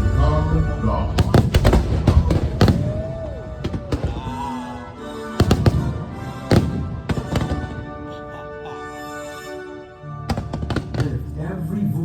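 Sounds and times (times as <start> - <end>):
show music: 0.0 - 11.6
fireworks bangs: 1.2 - 4.7, 5.3 - 8.0, 10.3 - 11.4.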